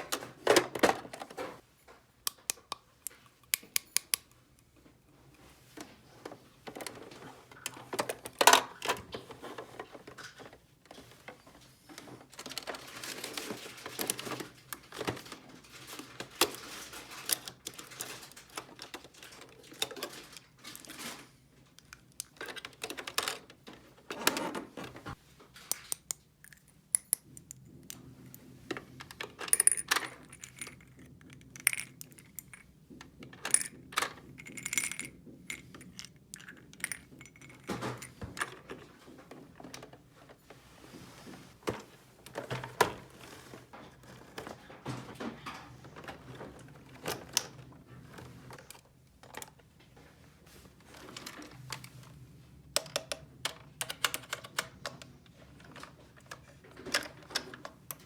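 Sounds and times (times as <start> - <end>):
plastic toy pieces clicking: 25.7 - 27.6.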